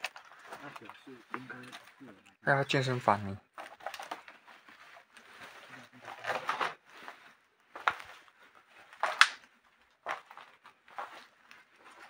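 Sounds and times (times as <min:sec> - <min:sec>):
footsteps and scuffing: 0:04.4 - 0:12.0.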